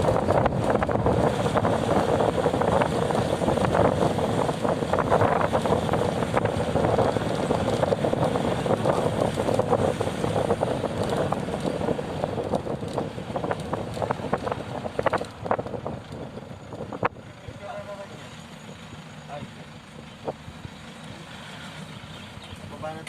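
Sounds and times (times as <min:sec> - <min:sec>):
wind buffeting microphone: 0:00.0 - 0:17.4
moving vehicle rumble: 0:00.0 - 0:23.0.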